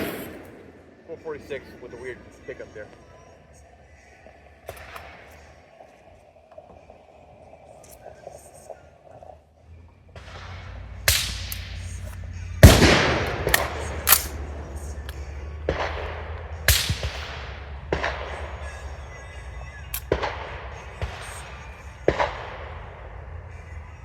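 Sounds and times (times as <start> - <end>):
gunshots: 0.0 - 2.9, 4.7 - 5.8, 10.2 - 23.8
low rumble: 7.0 - 24.0.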